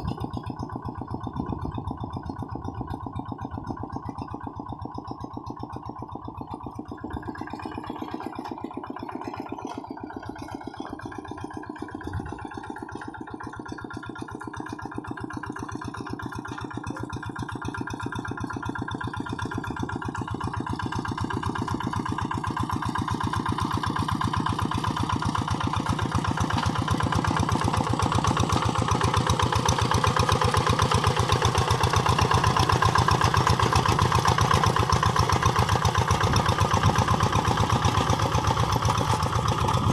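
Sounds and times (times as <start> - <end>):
diesel engine running: 5.6 - 14.6, 15.5 - 39.9.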